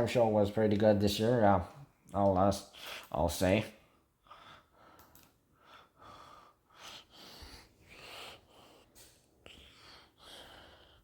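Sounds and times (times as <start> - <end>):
faint breathing: 3.8 - 11.0.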